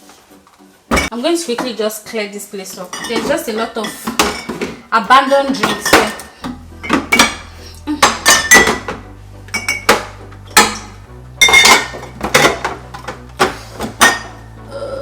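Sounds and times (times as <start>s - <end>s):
kitchenware clinking on counter: 2.7s - 4.9s, 5.5s - 6.3s, 6.9s - 9.0s, 9.6s - 12.8s, 13.4s - 14.4s.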